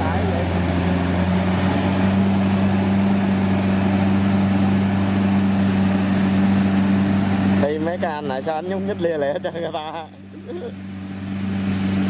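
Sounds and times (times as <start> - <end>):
diesel engine droning: 0.0 - 12.0.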